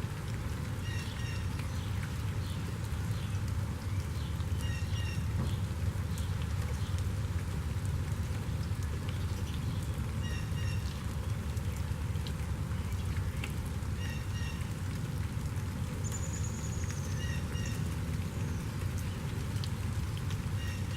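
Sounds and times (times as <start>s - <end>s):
raindrops ticking: 0.0s - 20.9s
steady rain: 0.0s - 20.9s.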